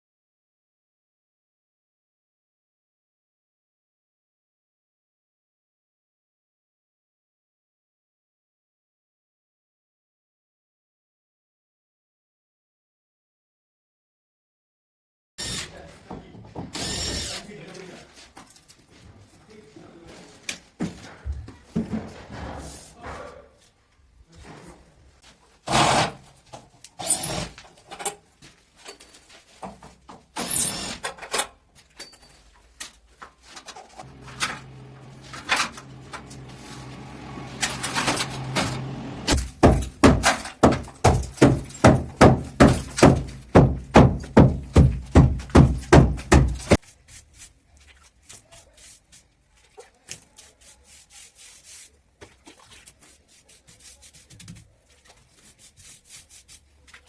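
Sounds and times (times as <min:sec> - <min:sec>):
knocks and scrapes: 0:20.2 - 0:23.7, 0:31.8 - 0:57.0
steady low hum: 0:34.1 - 0:39.4
regular knocking: 0:39.3 - 0:46.8.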